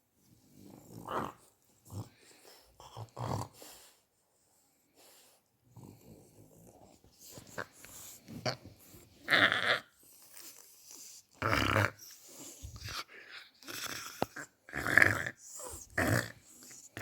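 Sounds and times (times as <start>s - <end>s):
dog snoring: 10.8s - 17.0s.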